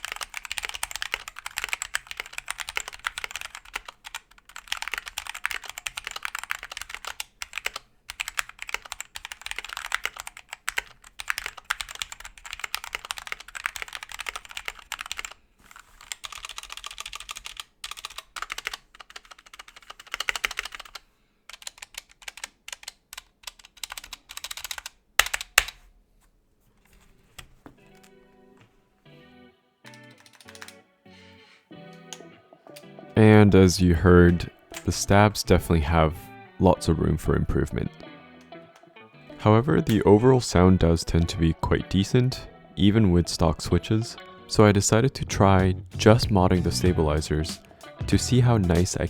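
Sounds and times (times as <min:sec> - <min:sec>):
mechanical keyboard typing: 0:00.0 - 0:25.8, 0:29.9 - 0:30.8, 0:46.0 - 0:49.0
keyboard stabilizers rattling: 0:29.9 - 0:31.7.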